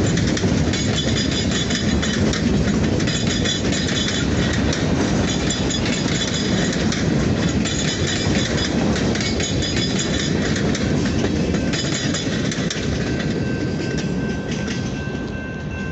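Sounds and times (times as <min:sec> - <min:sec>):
train rolling on track: 0:00.0 - 0:15.9.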